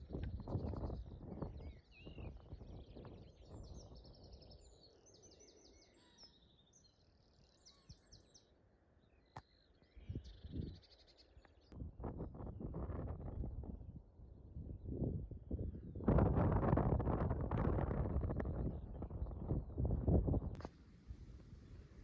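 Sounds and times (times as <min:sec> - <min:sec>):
songbirds chirping and trilling: 0:00.0 - 0:11.8.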